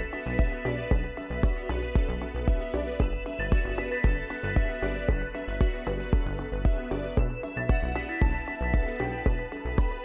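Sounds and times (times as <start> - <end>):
electronic music with steady beat: 0.0 - 10.0.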